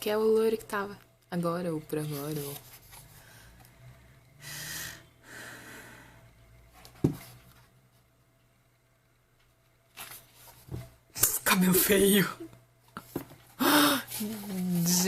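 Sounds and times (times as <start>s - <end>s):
pages rustling and turning: 2.0s - 3.2s, 9.9s - 10.9s, 14.1s - 15.0s.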